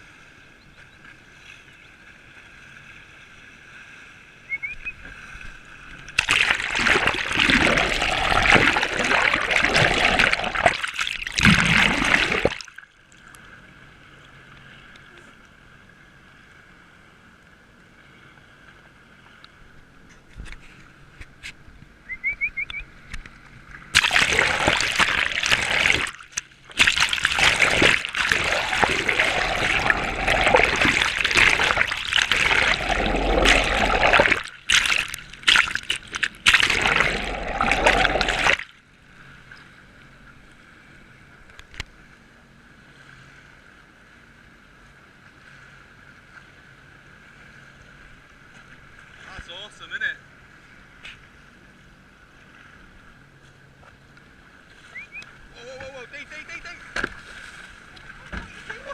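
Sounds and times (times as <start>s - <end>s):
water rushing and splashing: 1.0s - 15.8s, 22.9s - 39.5s, 54.6s - 58.9s.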